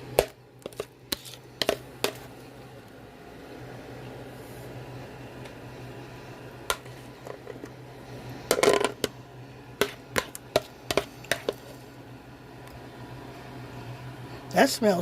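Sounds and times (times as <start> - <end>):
steady low hum: 0.0 - 15.0
utensil scraping a mixing bowl: 0.6 - 2.2.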